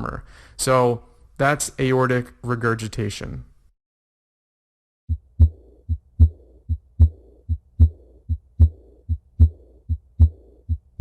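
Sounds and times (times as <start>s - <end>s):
heartbeat lub-dub: 5.1s - 11.0s
soft blowing heart murmur: 5.1s - 11.0s.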